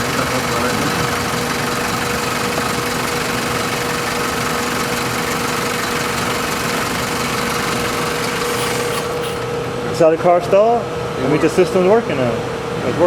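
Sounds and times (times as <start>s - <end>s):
car engine idling with whine: 0.0s - 10.0s.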